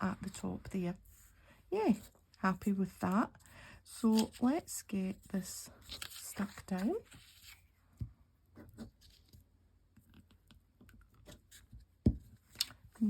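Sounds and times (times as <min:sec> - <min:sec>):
paper rustling: 0:04.0 - 0:07.8.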